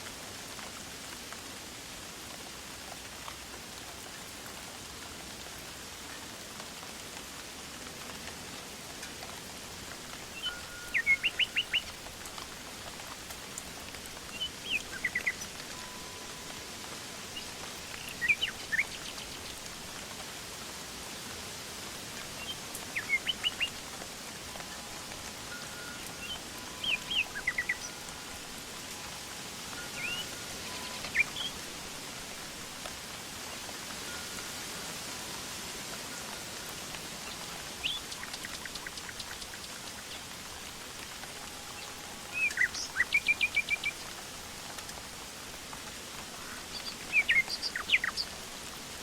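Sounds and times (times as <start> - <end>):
light rain hiss: 0.0 - 49.0
songbird chirping: 9.0 - 20.1, 22.1 - 45.0, 45.8 - 48.5.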